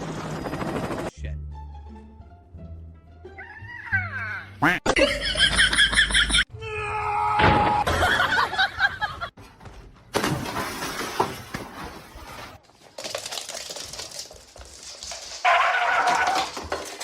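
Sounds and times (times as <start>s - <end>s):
objects crashing and breaking: 10.1s - 17.0s.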